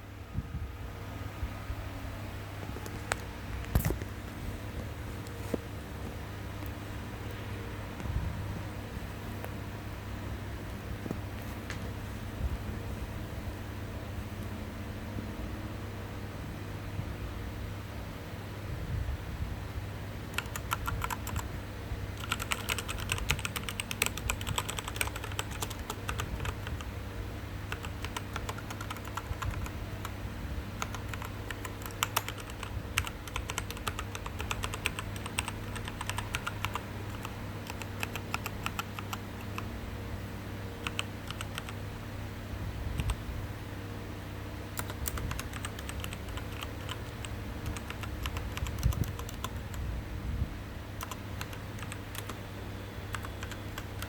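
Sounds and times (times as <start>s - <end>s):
steady low hum: 0.0s - 54.0s
mechanical keyboard typing: 20.3s - 21.5s, 22.2s - 26.9s, 27.6s - 30.2s, 30.8s - 39.7s, 40.8s - 41.8s, 42.9s - 43.2s, 44.8s - 49.8s, 51.0s - 52.4s, 53.1s - 54.0s.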